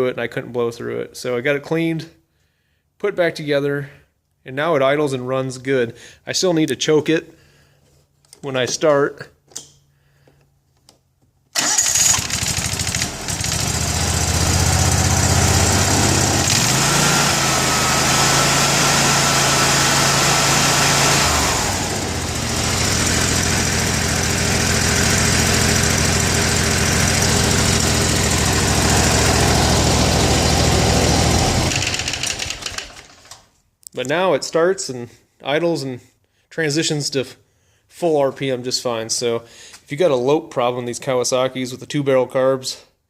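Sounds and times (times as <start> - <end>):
mower engine running: 11.6 - 33.3.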